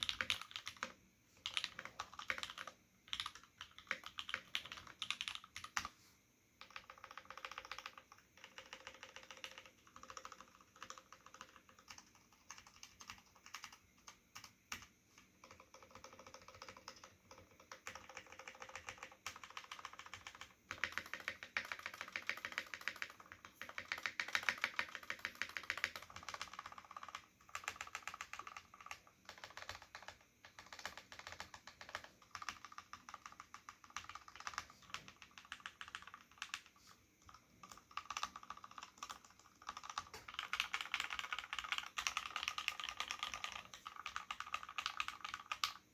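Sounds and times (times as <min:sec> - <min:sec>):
mechanical keyboard typing: 0:00.0 - 0:06.0, 0:06.6 - 0:45.9.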